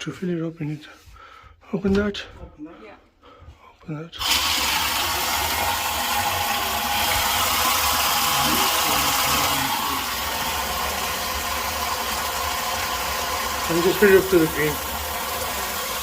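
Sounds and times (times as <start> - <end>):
water rushing through valve: 4.2 - 16.0.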